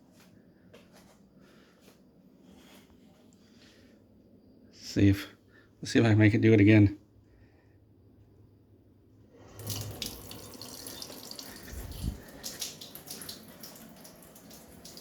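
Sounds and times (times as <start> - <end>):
water tap running: 9.3 - 15.0
water pipes banging: 9.5 - 15.0.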